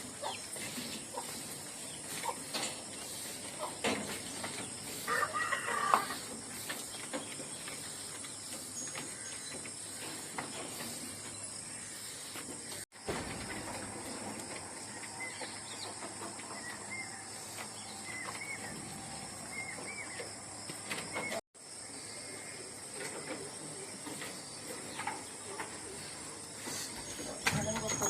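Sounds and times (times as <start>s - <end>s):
small bird chirping: 0.0s - 12.8s
insects hissing: 0.0s - 28.0s.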